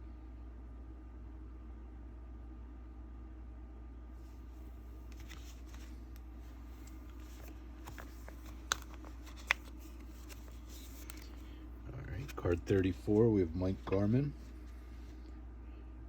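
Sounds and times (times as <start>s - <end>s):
low steady hum: 0.0s - 16.0s
trading cards rustling: 5.0s - 14.8s.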